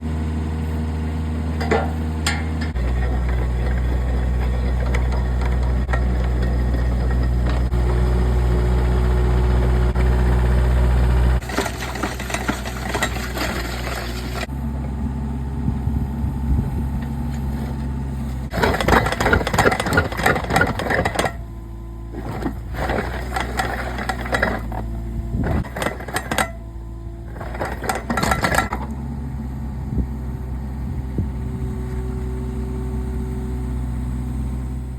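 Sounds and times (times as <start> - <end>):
diesel engine running: 0.0 - 34.9
auger drilling: 1.6 - 8.2, 11.4 - 14.5, 18.5 - 21.5, 22.1 - 26.6, 27.2 - 28.9.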